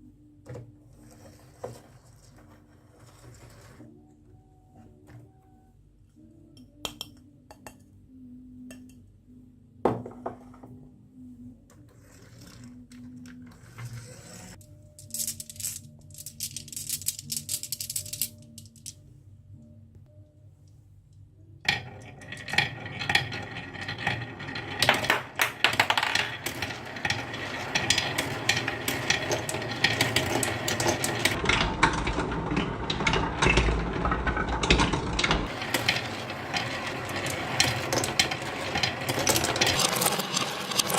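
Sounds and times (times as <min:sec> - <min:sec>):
marbles clattering down wooden run: 0:21.7 - 0:40.9.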